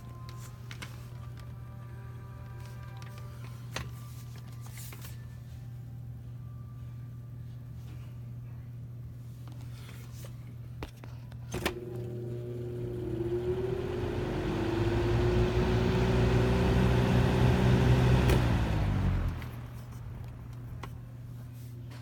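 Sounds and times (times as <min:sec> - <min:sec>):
fan motor hum: 0:00.0 - 0:22.0
steady low hum: 0:15.0 - 0:22.0.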